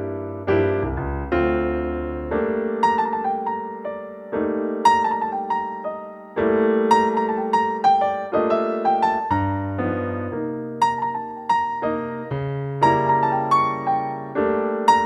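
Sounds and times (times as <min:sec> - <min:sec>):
electric piano music: 0:00.0 - 0:15.0
bass line: 0:00.2 - 0:02.4.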